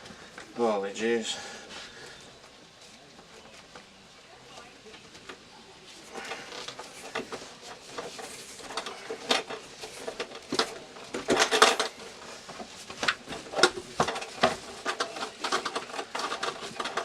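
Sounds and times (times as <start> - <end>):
electrical wire scraping and rattling: 4.6 - 17.0.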